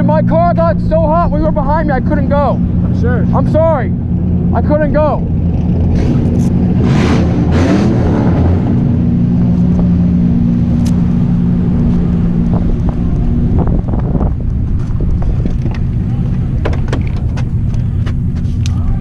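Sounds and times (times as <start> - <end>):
car engine revving: 0.0 - 19.0
engine knocks: 12.4 - 19.0.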